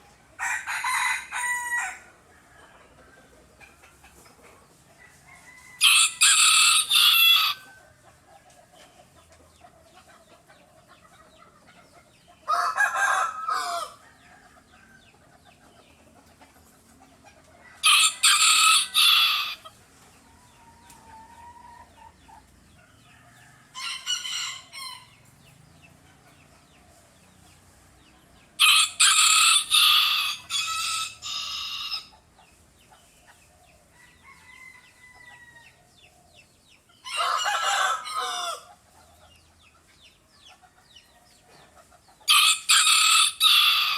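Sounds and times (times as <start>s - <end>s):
roosters crowing: 0.3s - 3.5s, 4.9s - 8.3s, 12.4s - 15.3s, 17.6s - 25.8s, 28.4s - 32.2s, 33.8s - 36.1s, 36.9s - 39.1s, 42.2s - 43.9s.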